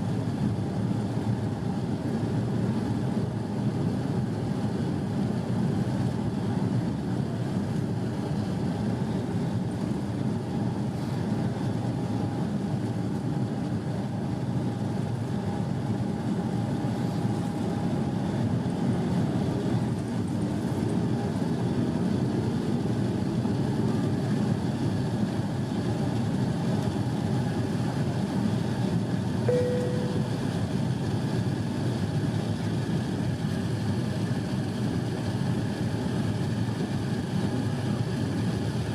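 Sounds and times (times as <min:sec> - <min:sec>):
airplane cabin engine rumble: 0:00.0 - 0:38.9
short single tone: 0:29.5 - 0:30.6
faint steady hum: 0:29.5 - 0:30.7.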